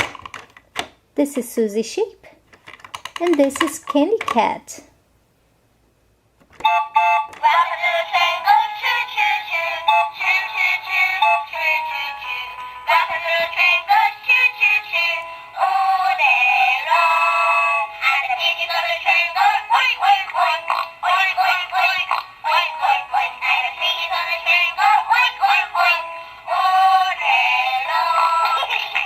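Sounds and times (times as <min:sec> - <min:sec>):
tinny toy speaker playing sung tune: 0:06.6 - 0:29.0.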